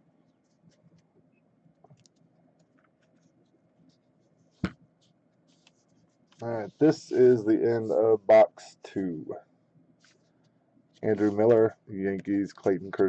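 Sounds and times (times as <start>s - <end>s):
trading cards rustling: 11.0s - 12.8s.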